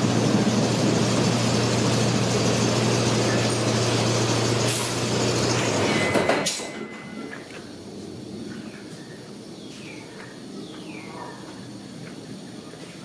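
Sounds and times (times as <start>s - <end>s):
train engine low hum: 0.0s - 13.0s.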